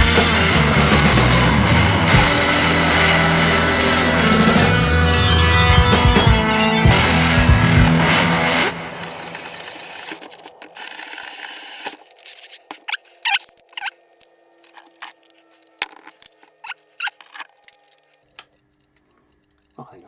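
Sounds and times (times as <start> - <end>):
music: 0.0 - 19.0
small hardware clicking and squeaking: 8.8 - 19.8.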